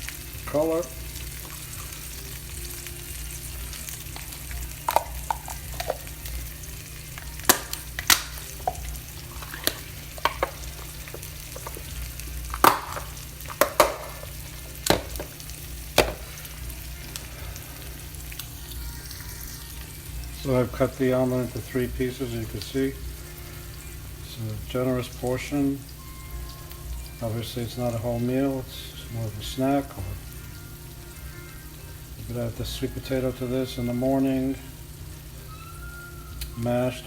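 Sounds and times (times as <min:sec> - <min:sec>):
omelet sizzling in frying pan: 0:00.0 - 0:37.0
utensil knocking against pan: 0:07.5 - 0:11.9, 0:12.5 - 0:15.4, 0:16.0 - 0:16.3.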